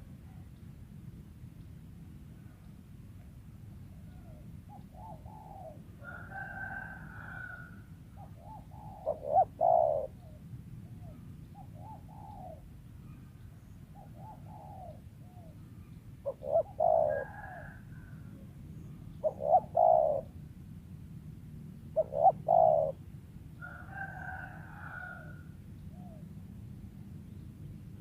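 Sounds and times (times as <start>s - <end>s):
doves cooing: 3.8s - 13.3s, 13.9s - 20.4s, 22.0s - 23.1s, 23.7s - 26.2s.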